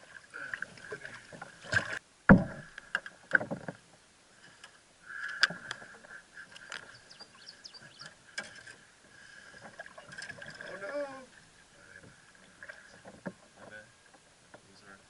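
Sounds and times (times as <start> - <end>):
sharp thump: 2.3 - 2.7.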